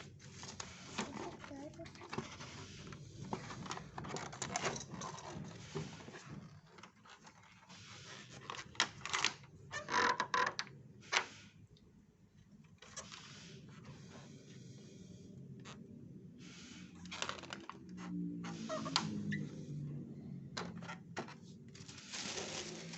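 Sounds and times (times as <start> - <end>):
packaging rustling and scraping: 0.0 - 9.4, 16.5 - 19.4, 20.7 - 22.9.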